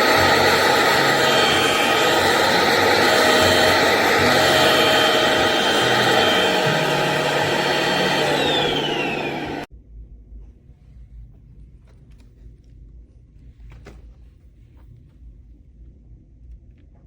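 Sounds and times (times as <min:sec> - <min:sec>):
stick vacuum motor whining: 0:00.0 - 0:09.7.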